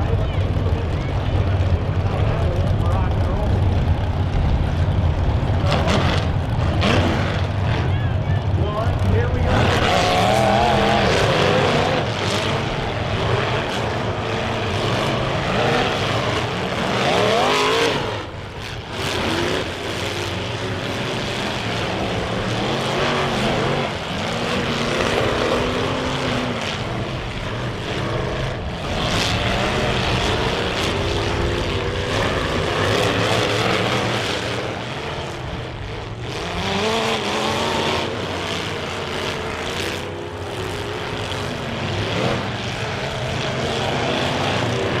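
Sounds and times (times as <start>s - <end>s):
car engines revving: 0.0s - 45.0s.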